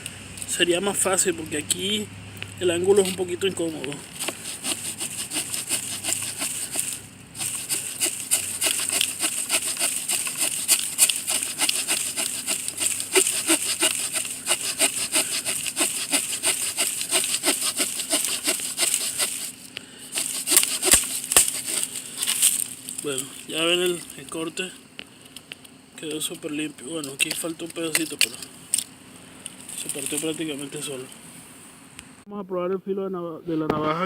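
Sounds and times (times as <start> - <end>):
saw blade sawing wood: 2.8 - 23.2.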